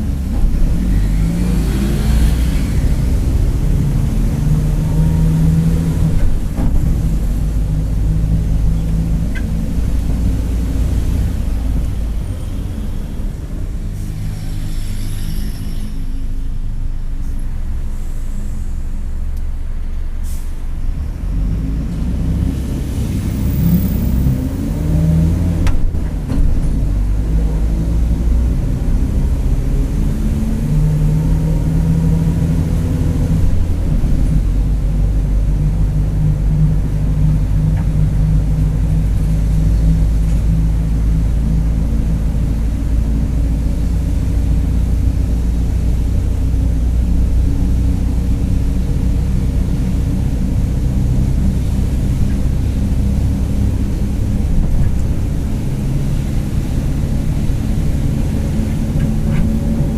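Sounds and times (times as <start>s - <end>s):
bus diesel engine pulling away: 0.0s - 59.9s
thin whine: 12.2s - 20.2s.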